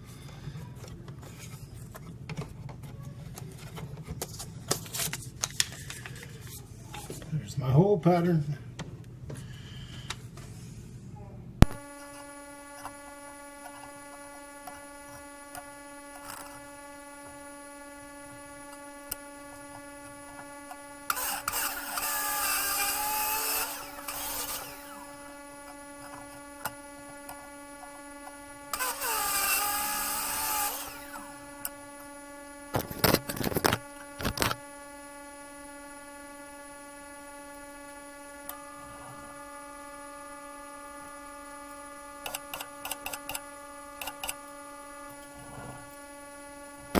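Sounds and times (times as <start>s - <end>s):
electric drill motor running: 11.6s - 46.9s
drill bit squealing into steel: 21.1s - 25.0s, 28.7s - 31.3s.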